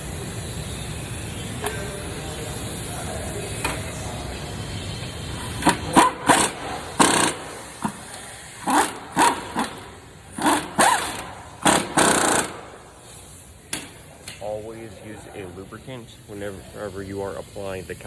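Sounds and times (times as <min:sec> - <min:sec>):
ratchet wrench clicking: 0:05.4 - 0:14.4.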